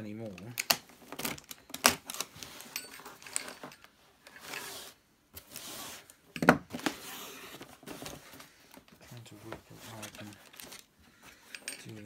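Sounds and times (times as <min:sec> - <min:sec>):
cardboard rubbing and sliding: 0:04.4 - 0:08.5.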